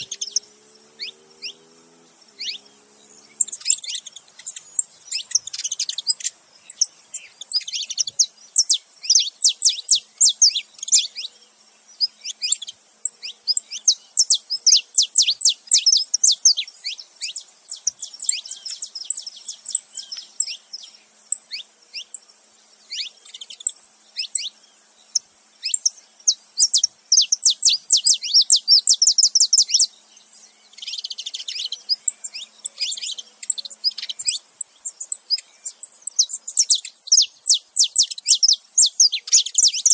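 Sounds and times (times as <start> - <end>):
buzzy bird call: 0.0 - 22.2, 30.7 - 39.9
finches chirping: 0.0 - 39.9.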